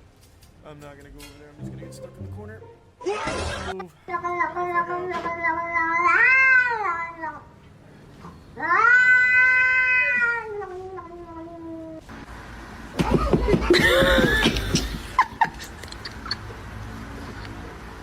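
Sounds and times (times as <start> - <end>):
cat yowling: 8.6 - 10.7.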